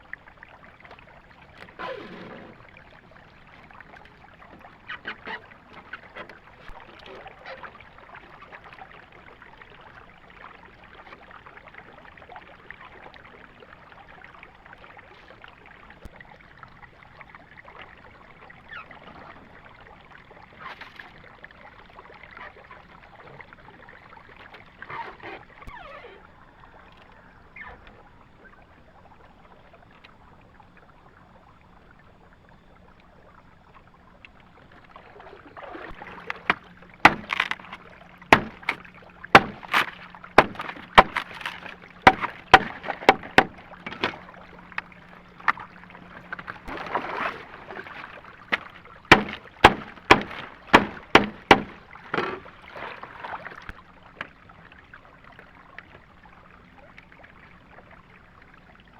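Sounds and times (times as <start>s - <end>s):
sharp knocks: 36.5s - 38.8s, 39.4s - 44.2s, 48.5s - 52.4s.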